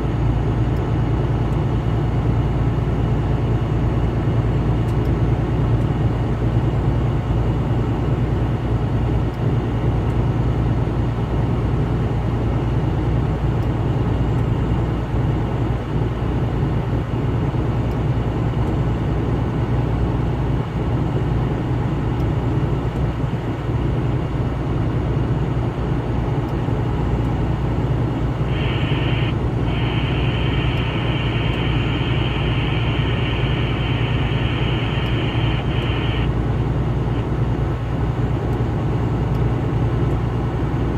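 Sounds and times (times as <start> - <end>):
engine and road rumble: 0.0 - 40.9
high hissing tone: 28.5 - 36.3.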